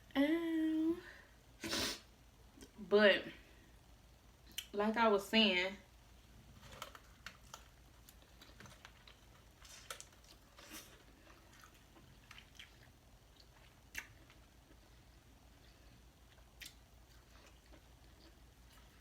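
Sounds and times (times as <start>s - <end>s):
person chewing wetly: 6.8s - 19.0s.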